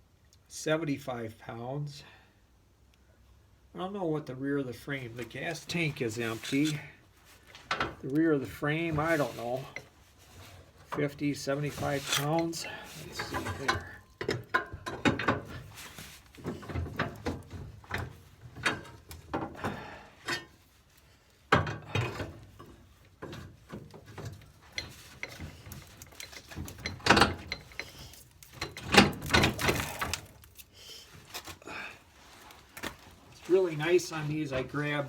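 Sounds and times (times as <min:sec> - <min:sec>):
metal parts clunking and scraping: 0:05.7 - 0:06.9, 0:08.8 - 0:20.6, 0:21.5 - 0:30.7.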